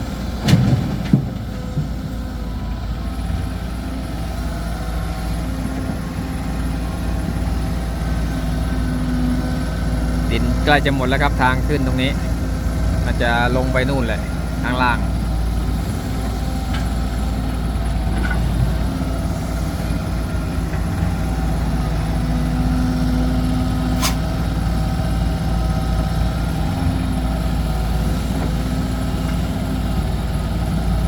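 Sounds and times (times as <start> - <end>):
heavy diesel engines running: 0.0 - 31.0.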